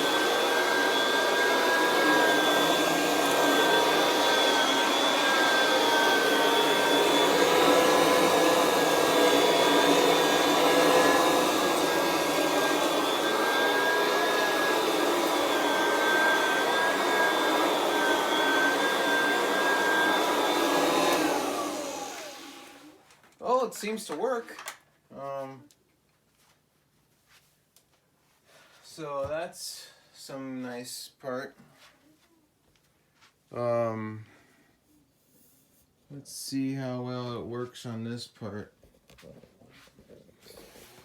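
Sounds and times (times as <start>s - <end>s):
vacuum cleaner motor whine: 0.0s - 23.0s.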